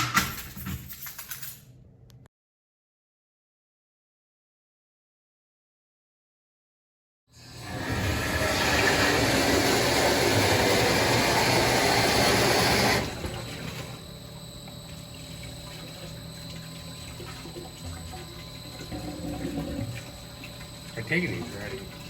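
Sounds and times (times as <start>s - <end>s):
water rushing from valve: 7.4s - 14.0s, 14.9s - 22.0s.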